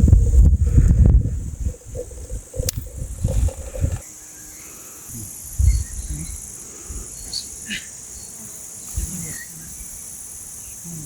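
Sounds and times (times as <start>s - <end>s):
low thumps: 0.0s - 4.0s
insects chirring: 0.0s - 11.0s.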